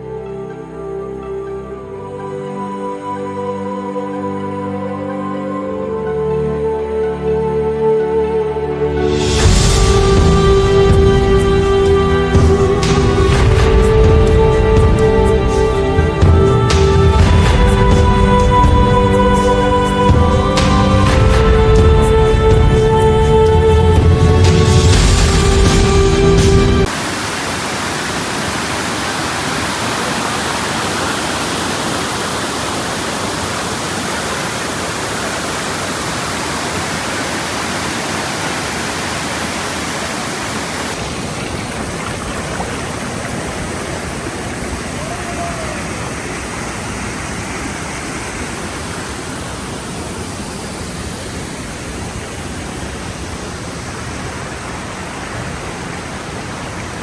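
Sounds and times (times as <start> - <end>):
waterfall rushing: 26.8 - 57.0.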